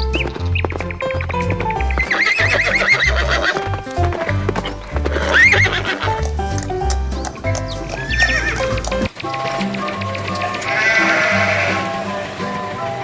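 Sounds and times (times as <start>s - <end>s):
background music with bass line: 0.0s - 9.2s
horse whinnying: 1.7s - 6.3s, 8.0s - 8.8s, 10.7s - 12.0s.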